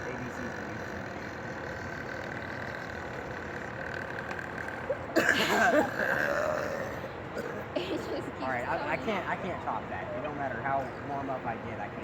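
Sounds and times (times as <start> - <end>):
loud croaky burp: 0.0 - 7.7
steady background hum: 0.0 - 12.0.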